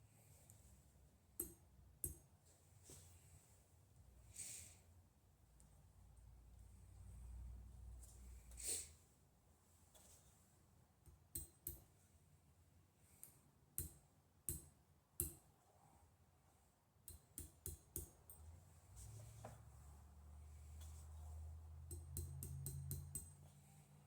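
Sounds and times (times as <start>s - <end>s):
metal taps on silver ring: 1.4s - 2.3s, 11.3s - 11.8s, 13.8s - 15.4s, 17.1s - 18.5s, 21.8s - 23.4s.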